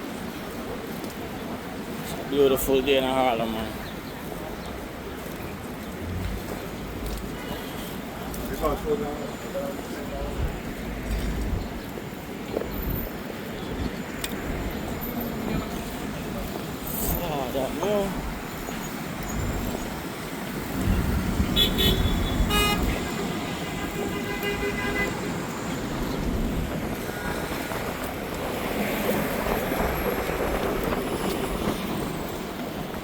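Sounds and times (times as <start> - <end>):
traffic rumble: 0.0 - 33.0
car horns tooting: 20.8 - 25.4.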